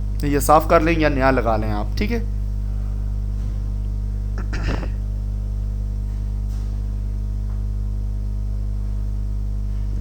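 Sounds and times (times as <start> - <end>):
low electrical hum: 0.0 - 10.0.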